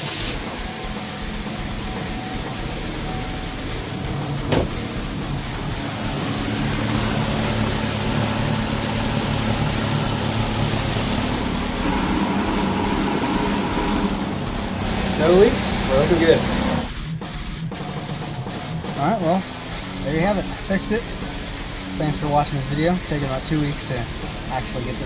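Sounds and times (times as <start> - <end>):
thin high whine: 0.0 - 17.1
car engine idling: 0.0 - 25.0.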